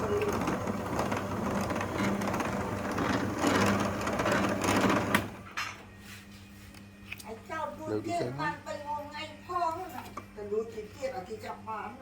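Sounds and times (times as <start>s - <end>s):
electric machine humming and rattling: 0.0s - 5.6s.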